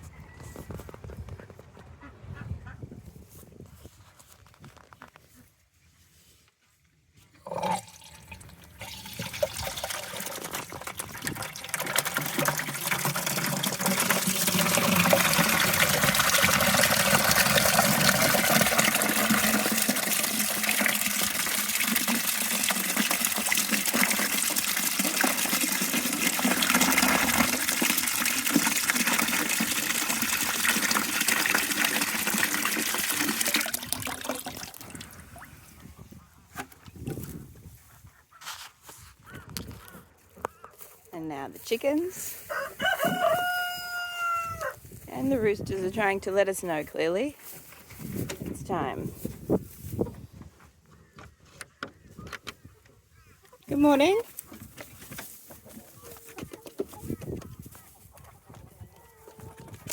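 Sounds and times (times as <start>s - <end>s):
water pouring into a bucket: 7.5s - 35.6s.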